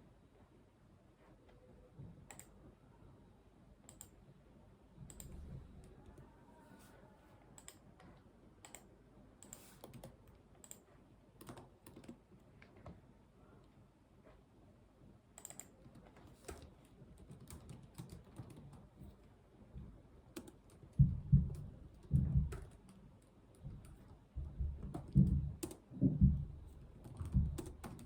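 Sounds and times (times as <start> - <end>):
mouse clicks: 3.9 - 4.2
soft low thump: 21.0 - 22.6, 24.4 - 27.6
keyboard keystrokes: 23.8 - 26.3.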